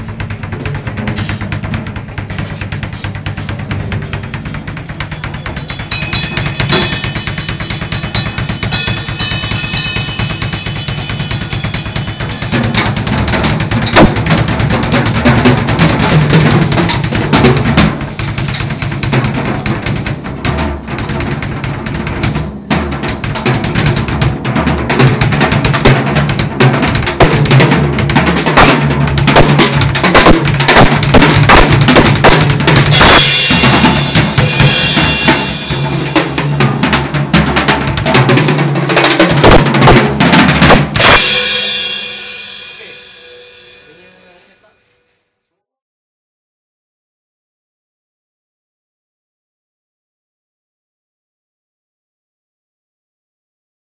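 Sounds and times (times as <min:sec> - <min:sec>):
cymbal crashes: 0:00.0 - 0:14.6, 0:28.6 - 0:38.3, 0:39.1 - 0:45.0
drum kit played fast: 0:00.0 - 0:44.7.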